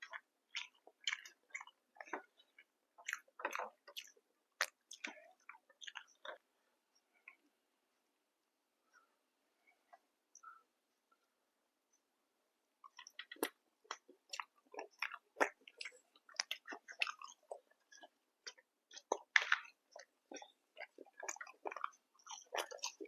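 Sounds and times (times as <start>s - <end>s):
person chewing food: 0.0s - 7.4s, 12.8s - 23.0s.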